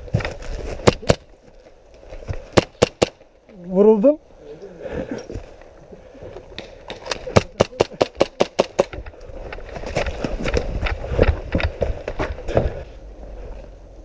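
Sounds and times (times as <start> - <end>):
airsoft gunfire: 2.6 - 3.2, 7.3 - 8.9.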